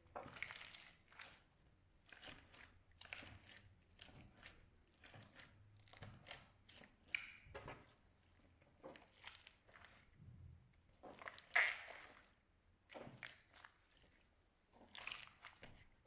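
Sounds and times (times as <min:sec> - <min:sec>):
slime squeezed by hand: 0:11.1 - 0:12.4.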